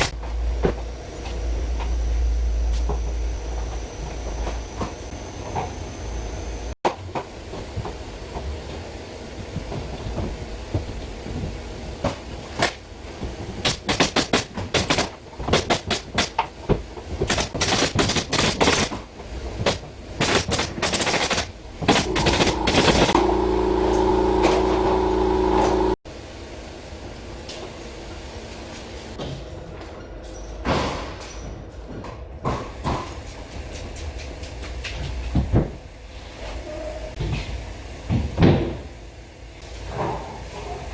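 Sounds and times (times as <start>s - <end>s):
power tool motor running: 21.8s - 26.0s.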